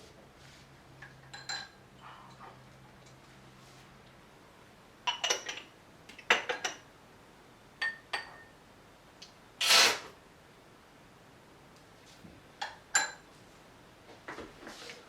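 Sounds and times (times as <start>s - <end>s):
cups and dishes clinking: 1.0s - 2.6s, 5.1s - 6.9s, 7.8s - 8.6s, 12.6s - 13.3s.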